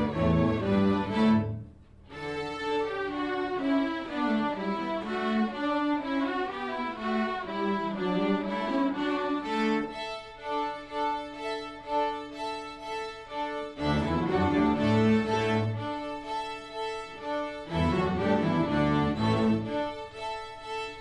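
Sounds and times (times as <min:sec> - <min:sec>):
string orchestra playing a carol: 0:00.0 - 0:21.0.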